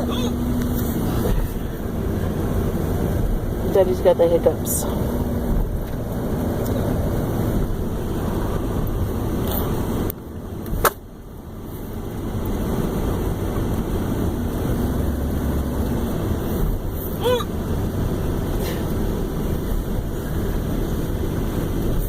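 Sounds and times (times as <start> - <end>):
man hiccuping: 0.0 - 0.4, 17.2 - 17.5
truck road rumble: 0.0 - 22.0.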